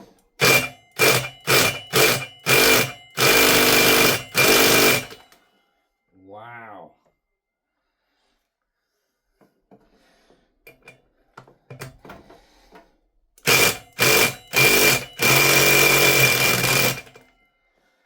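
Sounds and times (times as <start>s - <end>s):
power tool whining: 0.4s - 5.4s, 13.4s - 17.3s
tool handling clicks and knocks: 9.4s - 15.4s.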